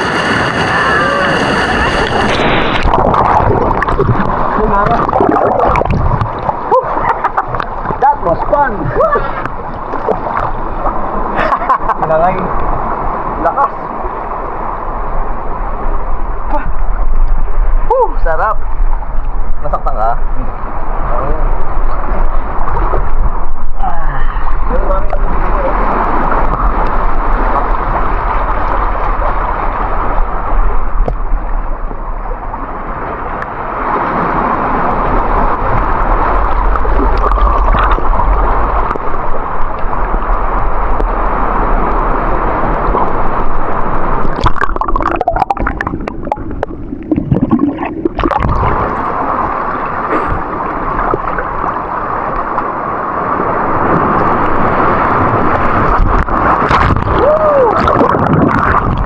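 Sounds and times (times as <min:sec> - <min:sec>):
water sloshing and gurgling: 0:00.0 - 0:59.0
sharp splashes and knocks: 0:44.2 - 0:49.3, 0:55.6 - 0:59.0.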